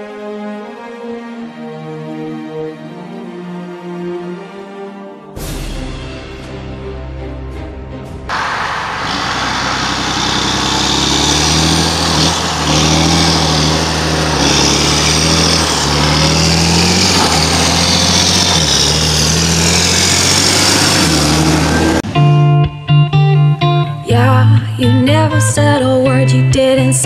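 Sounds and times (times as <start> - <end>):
loud rushing noise: 8.2 - 22.3
diesel engine running: 8.3 - 22.3.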